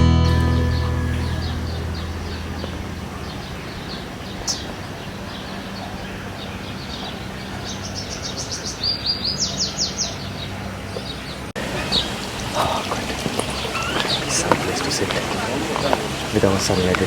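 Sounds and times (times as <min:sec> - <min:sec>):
guitar music: 0:00.0 - 0:03.8
small birds chirping: 0:00.7 - 0:17.0.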